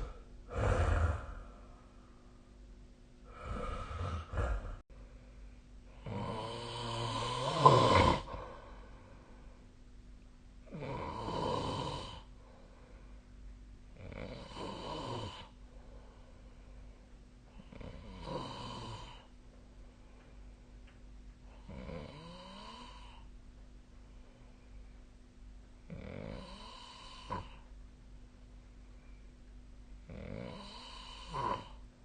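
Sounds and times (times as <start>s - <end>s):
person snoring: 0.0s - 1.8s, 3.2s - 4.8s, 5.9s - 8.8s, 10.6s - 12.3s, 14.0s - 15.6s, 17.6s - 19.3s, 21.6s - 23.3s, 25.9s - 27.7s, 30.1s - 31.8s.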